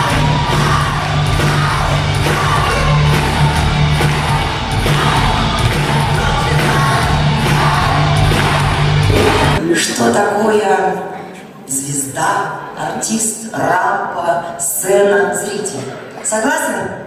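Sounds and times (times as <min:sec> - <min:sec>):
live band playing: 0:00.0 - 0:09.6.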